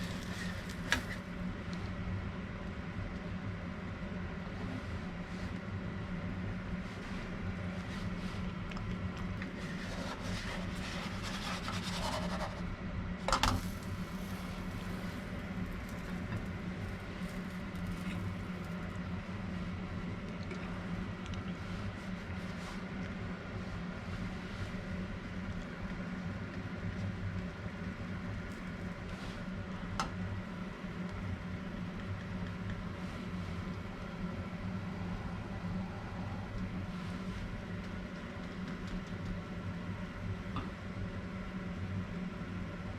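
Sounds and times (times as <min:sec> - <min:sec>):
rustling and scraping: 0:00.0 - 0:01.3, 0:09.4 - 0:12.7, 0:13.4 - 0:18.9
electric fan hum: 0:00.0 - 0:42.9.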